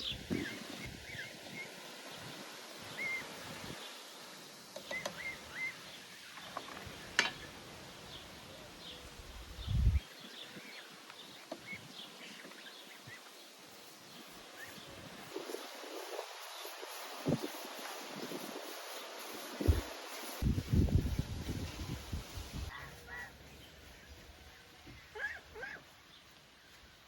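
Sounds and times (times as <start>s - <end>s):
birds chirping: 0.0s - 17.4s.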